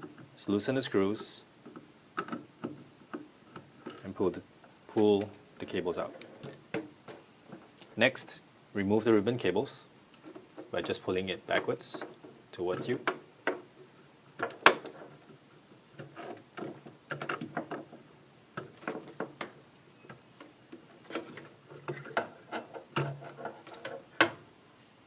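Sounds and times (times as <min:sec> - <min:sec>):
cables being handled: 0:01.2 - 0:04.3, 0:10.1 - 0:24.3.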